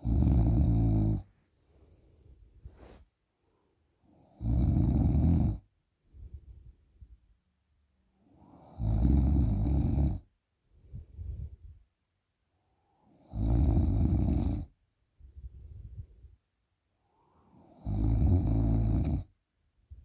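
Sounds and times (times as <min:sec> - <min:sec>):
person snoring: 0:00.0 - 0:01.3, 0:04.3 - 0:05.6, 0:08.5 - 0:10.2, 0:13.2 - 0:14.7, 0:17.6 - 0:19.3.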